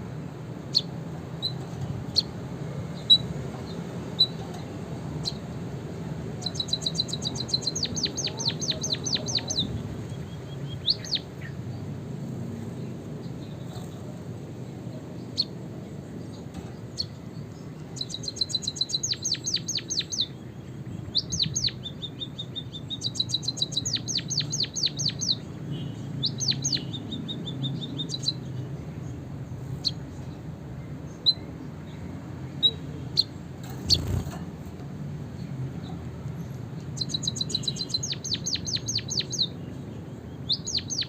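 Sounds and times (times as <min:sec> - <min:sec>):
low background noise: 0:00.0 - 0:41.0
finches singing trills: 0:06.4 - 0:12.0, 0:12.6 - 0:41.0.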